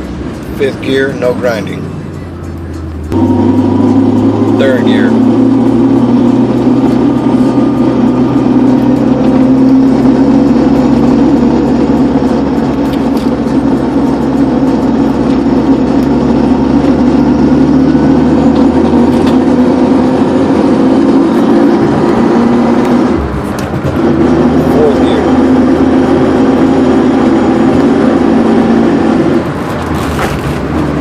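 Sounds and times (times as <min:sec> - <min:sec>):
car engine and drivetrain drone: 0:00.0 - 0:31.0.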